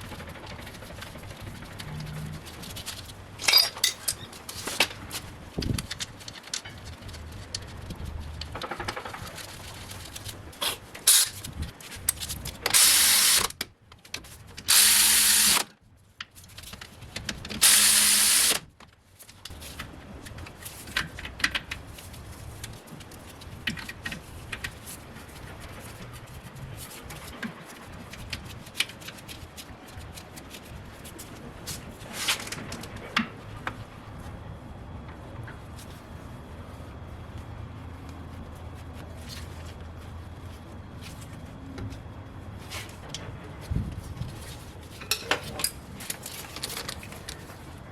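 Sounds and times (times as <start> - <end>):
power tool running: 12.7 - 13.5, 14.7 - 15.6, 17.6 - 18.6.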